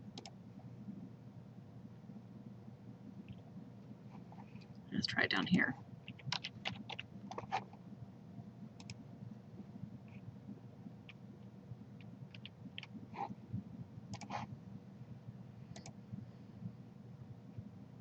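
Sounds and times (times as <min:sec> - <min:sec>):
low steady hum: 0:00.0 - 0:18.0
computer mouse buttons clicking: 0:06.1 - 0:07.6, 0:14.1 - 0:14.4, 0:15.7 - 0:16.0.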